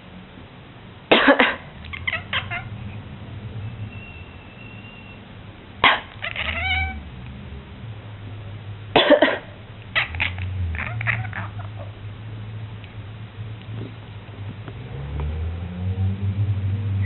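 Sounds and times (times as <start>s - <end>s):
cat coughing: 1.1s - 2.7s, 5.8s - 7.0s, 8.9s - 11.9s.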